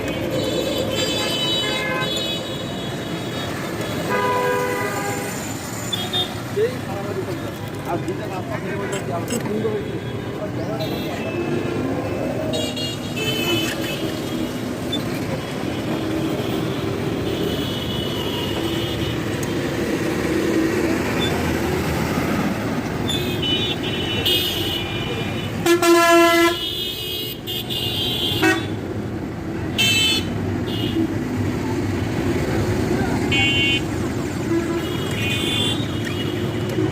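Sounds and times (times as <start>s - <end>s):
traffic rumble: 0.0s - 36.9s
loud vehicle horn blast: 4.1s - 5.3s, 23.2s - 28.8s.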